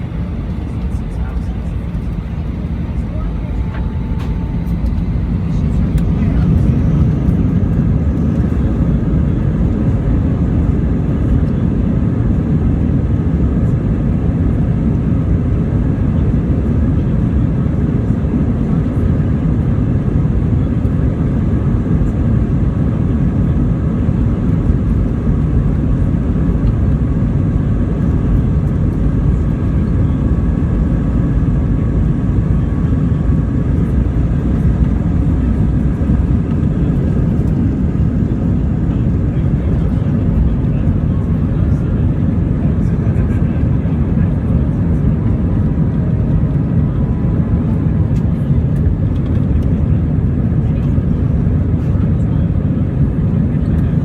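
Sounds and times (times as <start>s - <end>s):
faint whining tones: 0.0s - 7.6s
jet engine cabin rumble: 0.0s - 54.0s.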